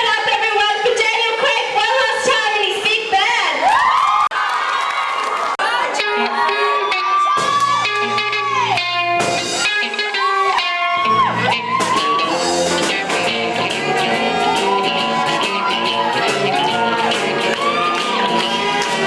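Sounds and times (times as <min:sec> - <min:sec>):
rock music with lead guitar: 0:06.0 - 0:19.0.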